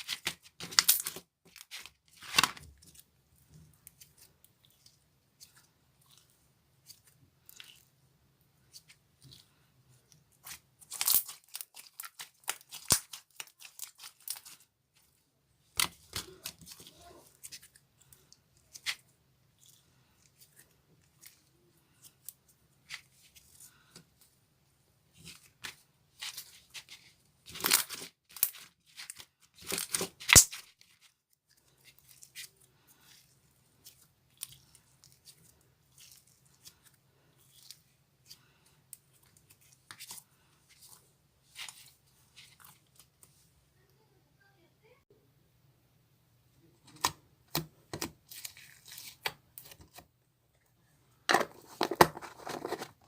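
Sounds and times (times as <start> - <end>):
slime crackling and popping: 10.4 - 14.6, 27.5 - 31.0.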